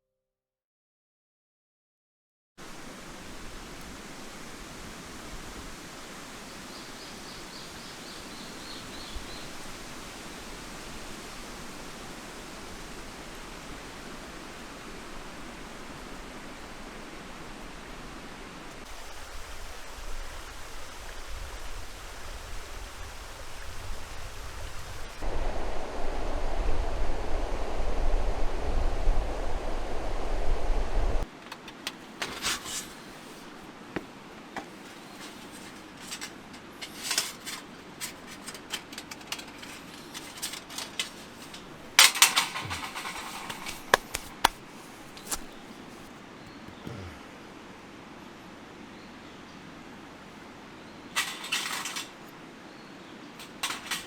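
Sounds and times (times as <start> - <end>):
mountain stream rushing: 2.6 - 31.4
rustles and clicks: 31.2 - 46.8, 51.2 - 52.3, 53.4 - 54.0.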